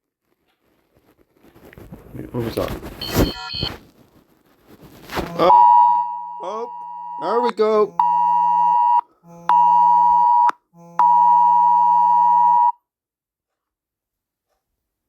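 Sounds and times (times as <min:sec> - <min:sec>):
two-tone phone alarm pulses: 0:05.4 - 0:12.8.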